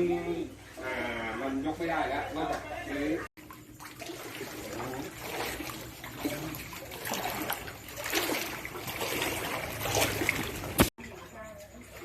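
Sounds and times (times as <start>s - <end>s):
floodwater splashing and lapping: 3.4s - 12.0s.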